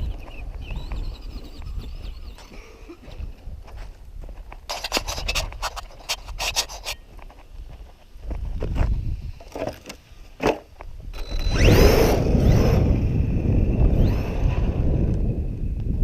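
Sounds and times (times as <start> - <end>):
low wind rumble: 0.0 - 16.0
rc truck motor whining: 11.1 - 15.5.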